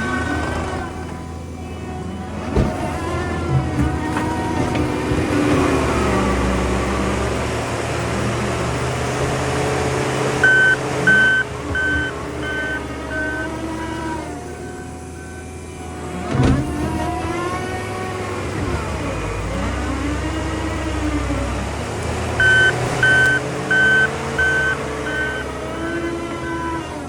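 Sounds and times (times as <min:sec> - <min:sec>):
diesel engine revving: 0:00.0 - 0:27.0
backup alarm beeping: 0:10.4 - 0:13.6, 0:22.4 - 0:26.6.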